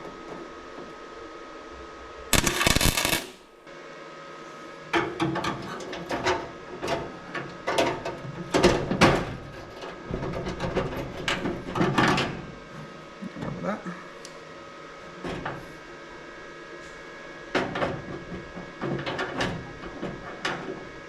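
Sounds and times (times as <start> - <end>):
welding arc crackle: 2.4 - 3.6.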